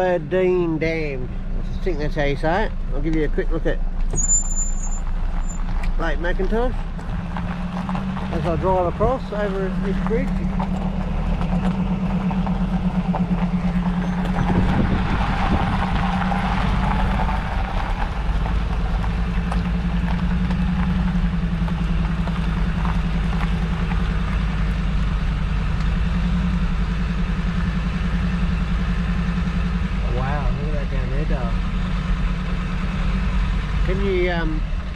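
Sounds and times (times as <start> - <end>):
vehicle engine and road noise: 0.0 - 34.9.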